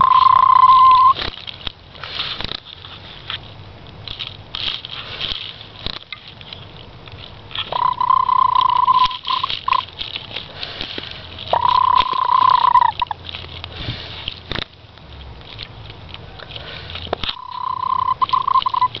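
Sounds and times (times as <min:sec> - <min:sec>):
hen purring trilling call: 0:00.0 - 0:01.2, 0:07.7 - 0:09.9, 0:11.5 - 0:13.2, 0:17.4 - 0:19.0
soft clicks and rustles: 0:00.0 - 0:19.0.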